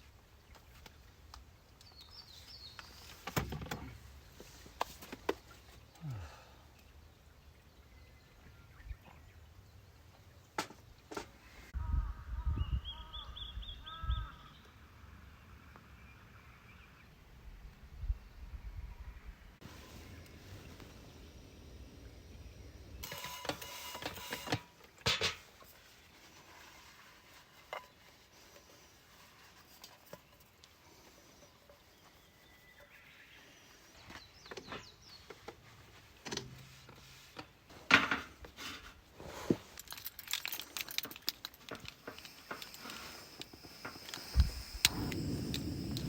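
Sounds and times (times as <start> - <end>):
small metal items clinking: 39.6 - 46.0.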